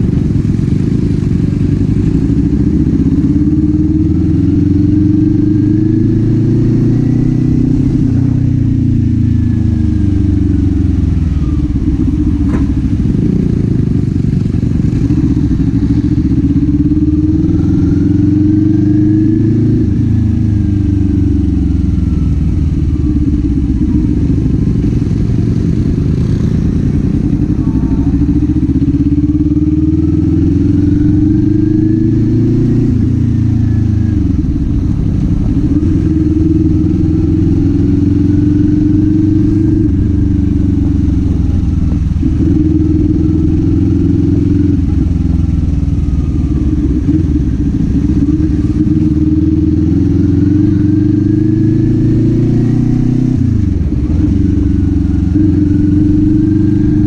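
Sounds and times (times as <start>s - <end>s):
motorcycle engine revving: 0.0s - 57.0s.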